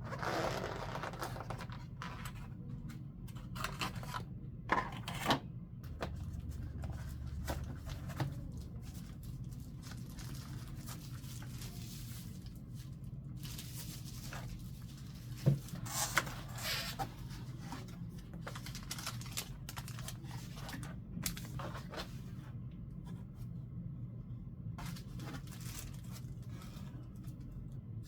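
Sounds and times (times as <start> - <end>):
steady low hum: 1.2 - 28.0
packaging rustling and crinkling: 6.1 - 22.2, 24.8 - 27.4.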